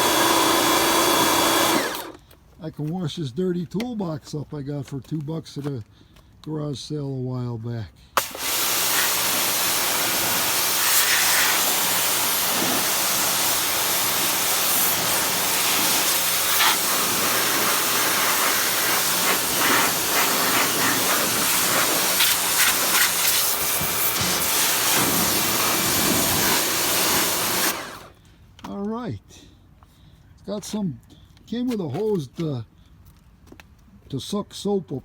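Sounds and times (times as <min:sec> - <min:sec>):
pressure washer water jet hissing: 0:00.0 - 0:02.2, 0:08.2 - 0:28.1.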